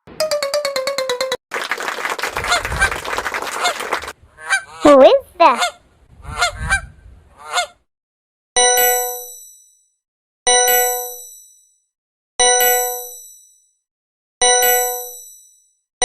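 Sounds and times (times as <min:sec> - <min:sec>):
geese honking: 0:03.6 - 0:04.8, 0:07.4 - 0:07.8.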